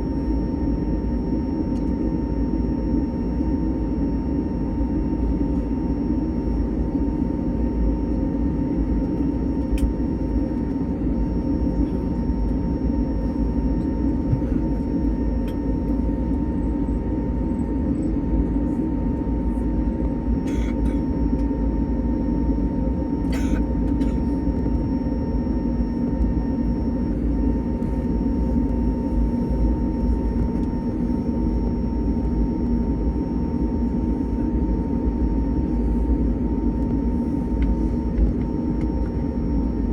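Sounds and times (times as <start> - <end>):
aircraft cabin hum: 0.1 - 39.9.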